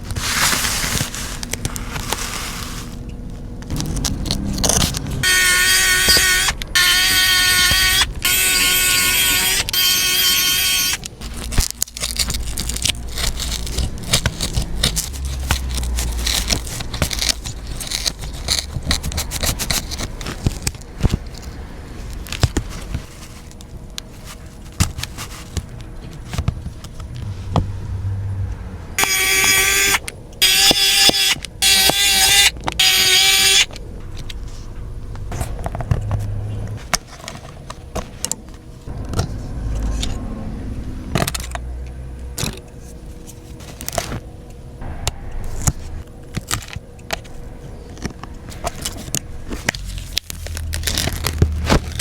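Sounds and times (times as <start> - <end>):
small parts clicking and scraping: 3.6 - 27.3
steady electronic tone: 5.2 - 11.0.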